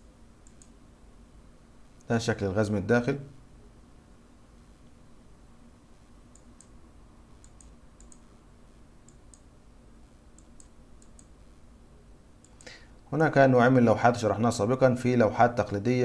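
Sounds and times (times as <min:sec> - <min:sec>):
low room hum: 0:00.0 - 0:16.0
faint sharp clicks: 0:00.4 - 0:00.8, 0:06.3 - 0:06.8, 0:07.4 - 0:08.3, 0:10.4 - 0:11.3.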